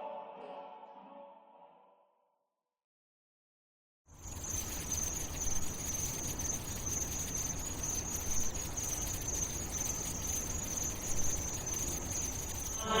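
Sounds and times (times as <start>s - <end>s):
insect chirring: 4.1s - 13.0s.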